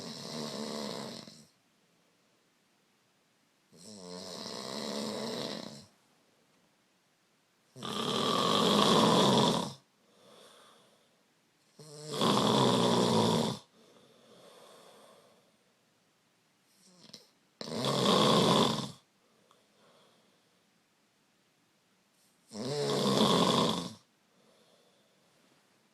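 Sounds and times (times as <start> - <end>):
person snoring loudly: 0.0 - 1.6, 3.7 - 5.9, 7.7 - 10.8, 11.7 - 15.2, 16.8 - 19.1, 22.5 - 24.1
soft breaths out: 10.0 - 11.3, 13.7 - 15.8, 19.1 - 20.7, 24.2 - 25.8.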